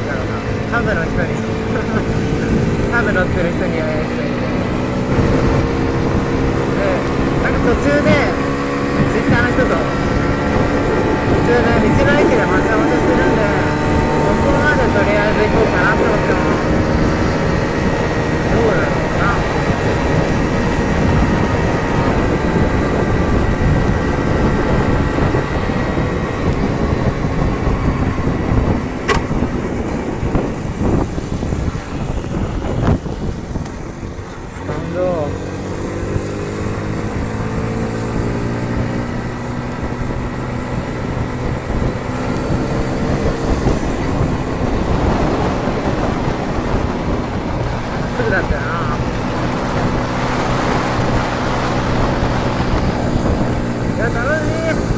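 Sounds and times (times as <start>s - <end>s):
motorcycle engine running: 0.0s - 54.9s
wind buffeting microphone: 0.0s - 54.9s.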